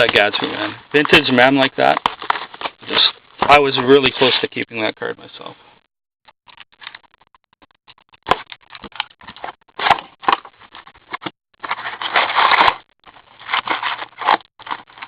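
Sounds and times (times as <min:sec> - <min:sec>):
card box and foil packs tearing: 0:00.0 - 0:03.2, 0:11.6 - 0:15.0.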